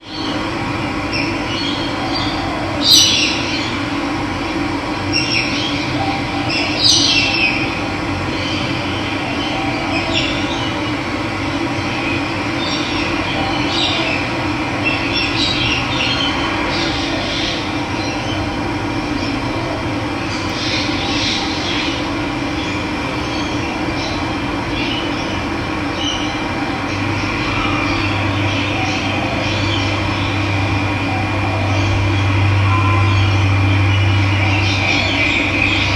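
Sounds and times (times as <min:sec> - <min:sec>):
birds chirping: 0:20.2 - 0:35.9.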